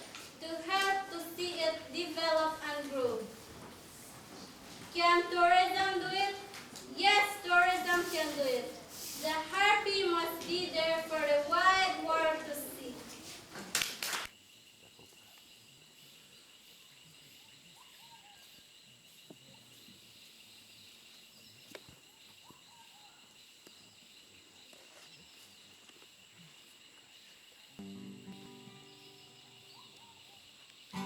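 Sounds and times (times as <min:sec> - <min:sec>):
insects droning: 0:00.0 - 0:31.0
soft bird chirps: 0:14.9 - 0:31.0.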